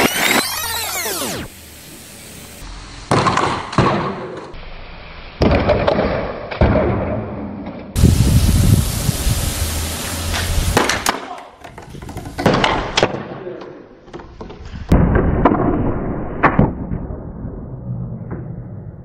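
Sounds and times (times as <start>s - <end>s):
loud hissing spray: 0.0s - 6.5s, 8.0s - 11.1s.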